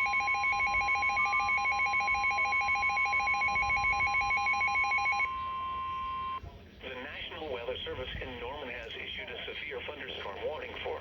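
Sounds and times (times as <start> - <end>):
fast-warbling electronic alarm: 0.0 - 6.4
steady alarm tone: 0.0 - 6.4.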